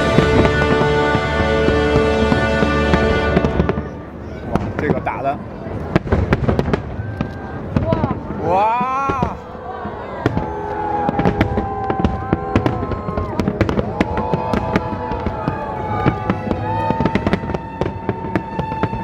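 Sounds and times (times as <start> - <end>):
classical violin music: 0.0 - 4.8, 14.5 - 19.0
fireworks bursting and crackling: 0.0 - 19.0.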